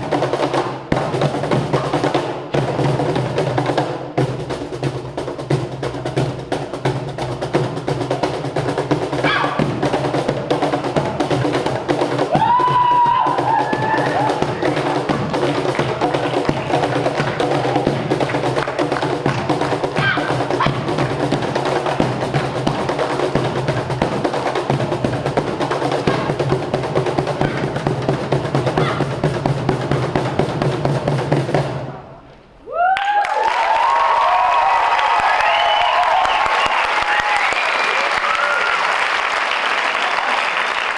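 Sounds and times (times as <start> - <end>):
music: 0.0 - 32.3
audience applause and cheering: 12.3 - 19.4, 32.6 - 40.9.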